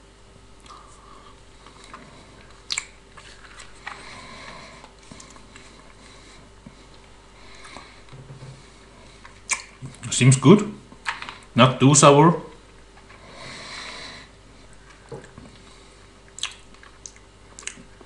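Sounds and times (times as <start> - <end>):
person chewing candy: 0.6 - 8.1, 14.7 - 18.0
mouth clicks: 2.6 - 3.0, 9.5 - 9.8, 16.3 - 17.8.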